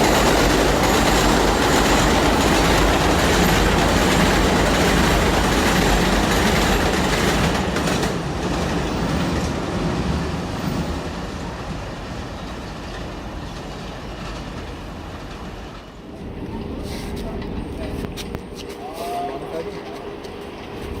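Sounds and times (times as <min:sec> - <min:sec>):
subway train passing: 0:00.0 - 0:21.0
wheels clattering on rails: 0:00.0 - 0:21.0.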